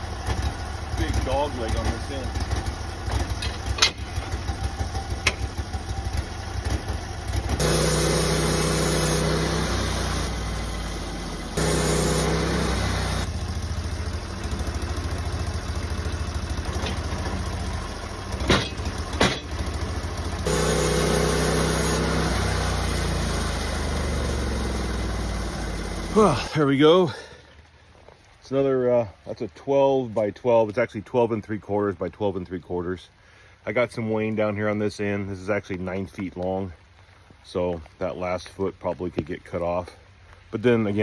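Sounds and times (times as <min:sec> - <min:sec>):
sawmill engine running: 0:00.0 - 0:27.0
sharp knocks: 0:18.4 - 0:19.6.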